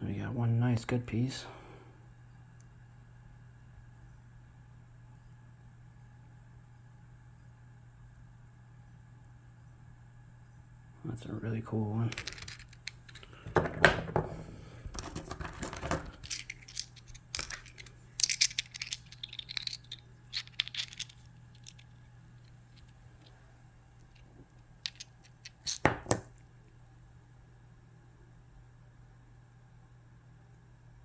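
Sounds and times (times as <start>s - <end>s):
faint low hum: 0.0s - 31.0s
stone pieces clicking and scraping: 12.1s - 13.7s, 14.9s - 23.3s, 24.0s - 26.4s.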